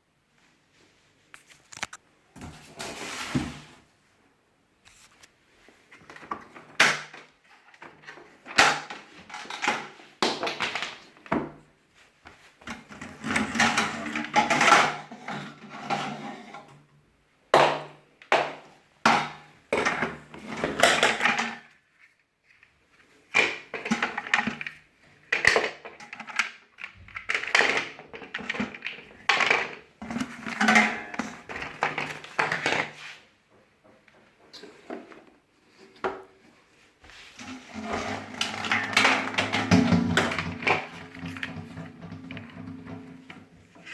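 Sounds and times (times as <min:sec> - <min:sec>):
plastic parts clicking and knocking: 0:06.0 - 0:11.6, 0:23.3 - 0:32.9, 0:37.8 - 0:43.9
plastic and cardboard rustling: 0:19.8 - 0:33.4, 0:34.3 - 0:43.9.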